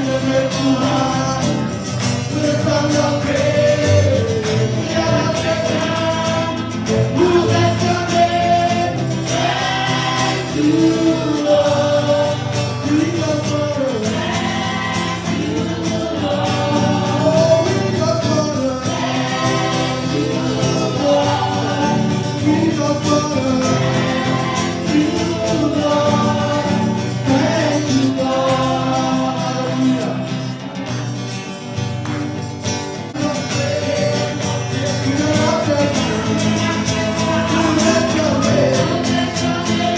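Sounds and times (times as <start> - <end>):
gospel choir singing: 0.0 - 31.3, 32.4 - 39.9.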